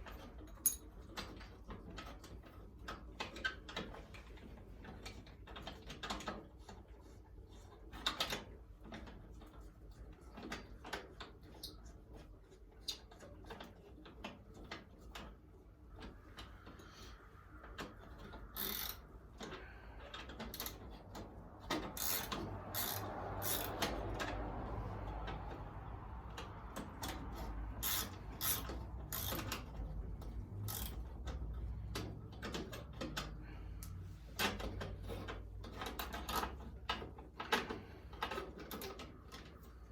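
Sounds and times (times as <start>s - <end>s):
socket wrench ratcheting: 18.6s - 19.0s, 21.9s - 24.3s, 27.8s - 29.8s, 30.6s - 31.2s.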